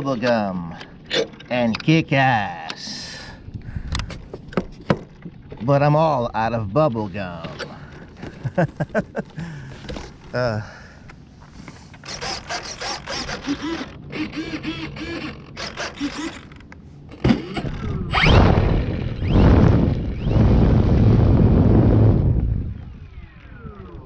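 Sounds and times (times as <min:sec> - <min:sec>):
electric motor and propeller: 0:12.0 - 0:24.0.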